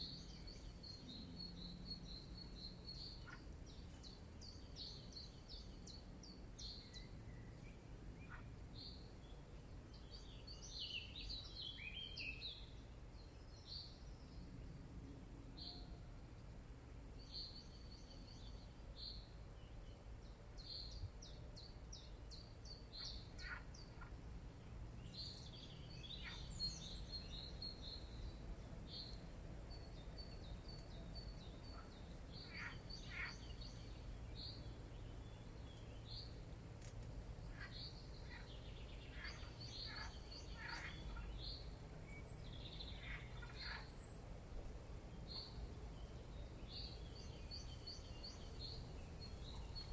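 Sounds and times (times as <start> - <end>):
birds chirping: 25.0 - 36.6, 37.4 - 49.9.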